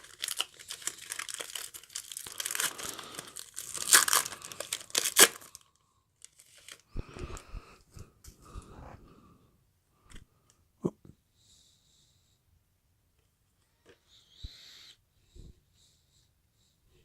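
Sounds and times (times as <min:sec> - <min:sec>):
card pack wrapper crinkling: 0:00.0 - 0:06.9
wrapper ripping: 0:00.0 - 0:06.9.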